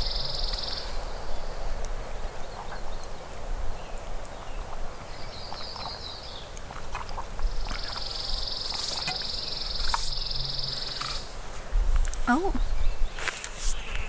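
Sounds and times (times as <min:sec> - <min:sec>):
wind on microphone: 0:00.0 - 0:14.0.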